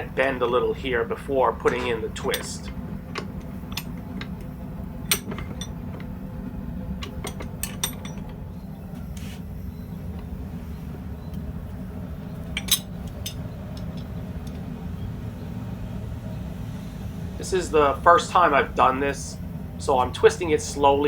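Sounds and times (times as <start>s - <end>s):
low hum: 0.0s - 21.0s
metal rod clinking: 1.6s - 4.4s, 5.0s - 6.1s, 7.0s - 8.4s, 12.5s - 14.1s.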